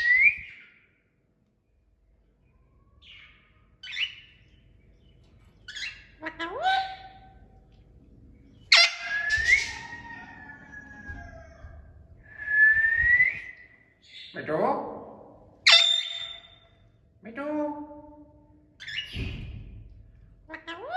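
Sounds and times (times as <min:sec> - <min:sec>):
parrot chirping and squawking: 0:03.0 - 0:04.3, 0:05.7 - 0:07.4, 0:08.6 - 0:11.8, 0:15.6 - 0:16.8, 0:18.8 - 0:19.2, 0:20.4 - 0:20.9
parrot whistling: 0:08.7 - 0:10.2, 0:15.6 - 0:16.6.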